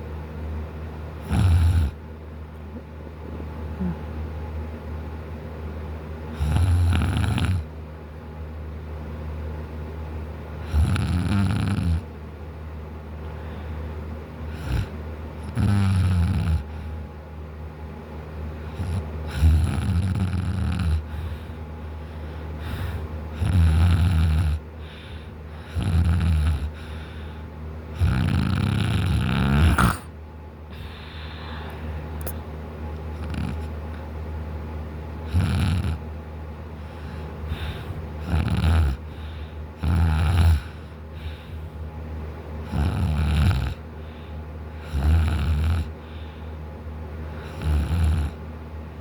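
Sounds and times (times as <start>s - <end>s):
man snoring loudly: 1.2s - 2.0s, 6.4s - 7.7s, 10.7s - 12.0s, 14.6s - 14.9s, 15.5s - 16.7s, 18.7s - 21.1s, 23.4s - 24.6s, 25.7s - 26.8s, 28.0s - 30.1s, 35.3s - 36.0s, 38.2s - 39.0s, 39.8s - 40.8s, 42.7s - 43.8s, 44.8s - 45.9s, 47.4s - 48.4s.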